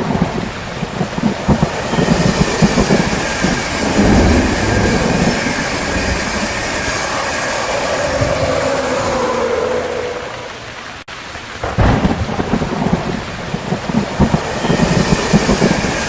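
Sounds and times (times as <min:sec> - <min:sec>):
low rumble: 0:00.0 - 0:09.9
steady whining tones: 0:00.0 - 0:11.0, 0:13.9 - 0:16.0
rain: 0:00.0 - 0:16.0.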